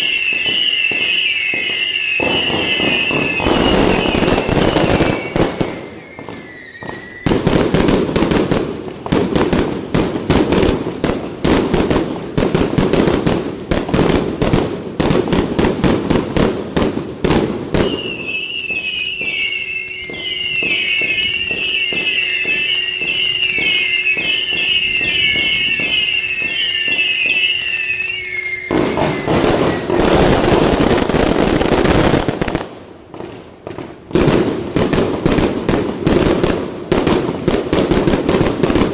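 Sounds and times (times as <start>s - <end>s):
high warbling firework whistles: 0.0s - 8.1s, 17.6s - 32.0s
fireworks bangs and crackles: 0.0s - 38.9s.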